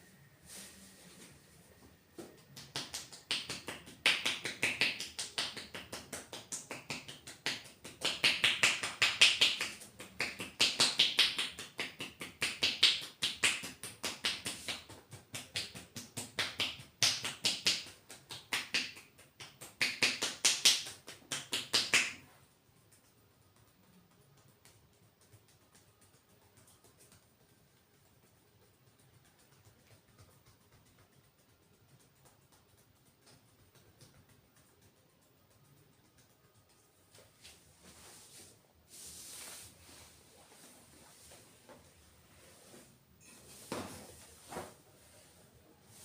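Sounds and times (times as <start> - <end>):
hands tapping on skin: 2.2 - 37.6.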